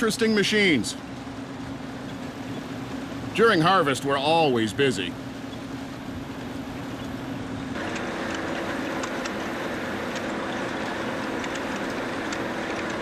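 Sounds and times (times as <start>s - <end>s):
farm machinery engine running: 5.2s - 13.0s.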